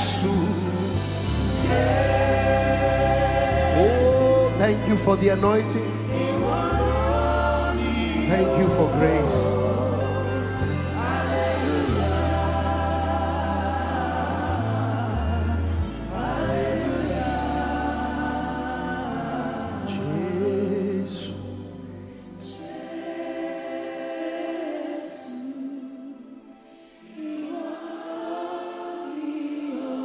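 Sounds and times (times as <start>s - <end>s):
steady bass line: 0.0s - 20.6s
choir singing held notes: 0.0s - 30.0s.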